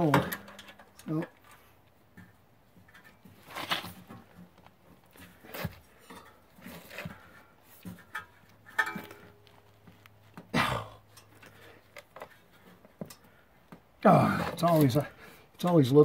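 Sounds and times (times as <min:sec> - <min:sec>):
tools and metal parts clinking: 0:00.0 - 0:01.7, 0:07.8 - 0:09.6.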